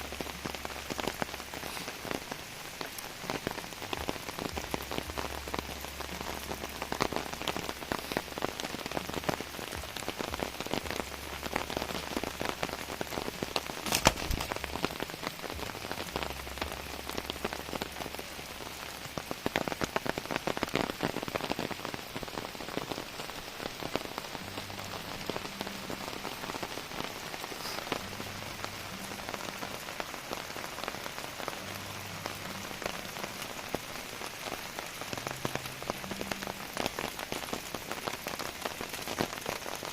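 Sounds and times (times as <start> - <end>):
heavy rain patter: 0.0 - 39.9.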